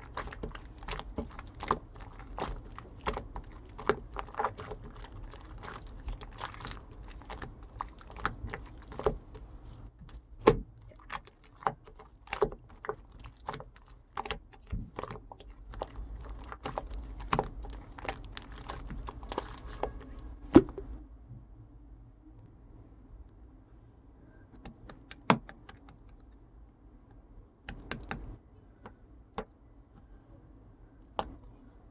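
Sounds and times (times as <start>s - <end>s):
slime squished by hand: 0.0s - 21.0s.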